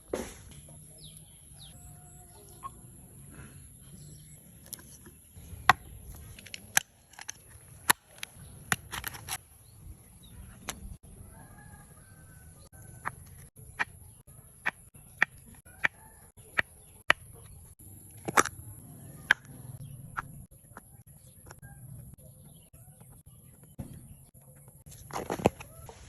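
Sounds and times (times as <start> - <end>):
chickens clucking: 0.7 - 3.5.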